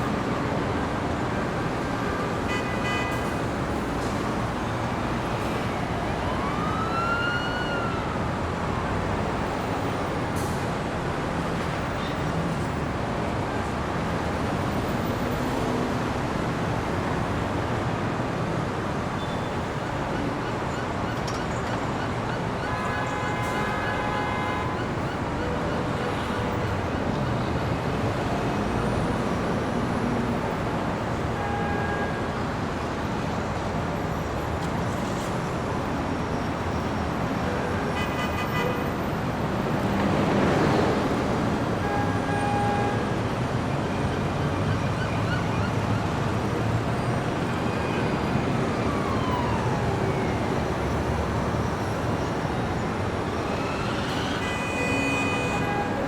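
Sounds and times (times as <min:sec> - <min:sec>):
siren whoop: 0:05.6 - 0:08.3, 0:47.7 - 0:51.0, 0:53.1 - 0:56.0
passing vehicles rumbling: 0:32.2 - 0:56.0.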